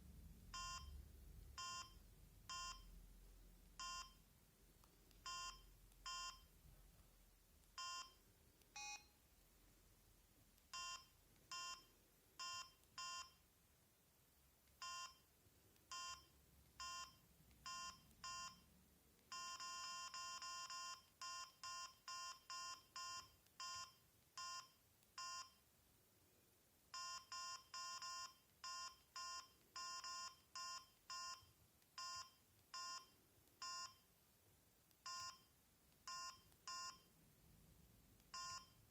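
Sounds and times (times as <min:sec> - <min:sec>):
phone key beeps: 0:05.2 - 0:06.5, 0:07.8 - 0:08.2, 0:08.8 - 0:09.1, 0:10.7 - 0:13.4, 0:14.8 - 0:15.2, 0:15.9 - 0:18.6, 0:19.3 - 0:25.6, 0:27.0 - 0:34.1, 0:35.0 - 0:37.1, 0:38.2 - 0:38.9.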